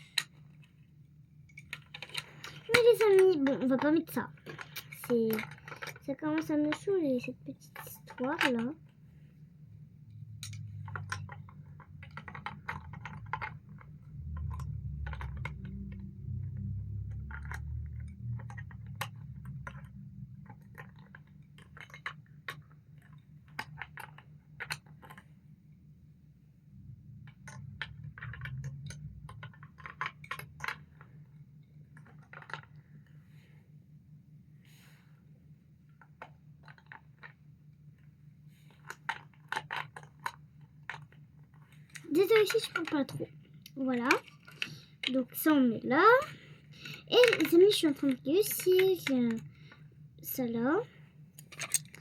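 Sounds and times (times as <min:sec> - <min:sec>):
low steady rumble: 0:00.0 - 0:52.0
plastic bricks clicking: 0:01.6 - 0:08.8, 0:10.2 - 0:25.2, 0:27.2 - 0:31.1, 0:38.7 - 0:45.5, 0:46.3 - 0:49.5, 0:51.4 - 0:52.0.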